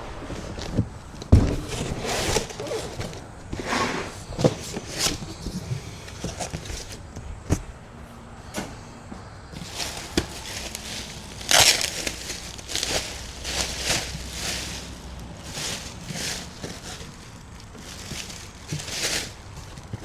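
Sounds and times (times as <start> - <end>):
packaging crinkling and rustling: 0.5 - 3.5, 9.6 - 20.0
box knocks and thuds: 1.2 - 3.2.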